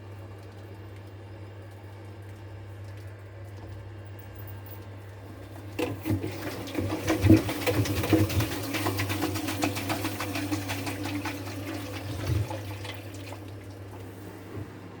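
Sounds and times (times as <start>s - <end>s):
drain pump humming: 4.6s - 15.0s.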